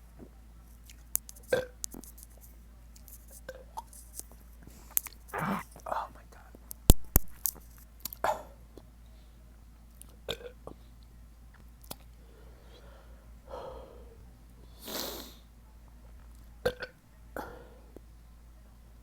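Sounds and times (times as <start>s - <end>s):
mouth clicks: 4.9s - 5.9s
man burping: 5.3s - 5.8s.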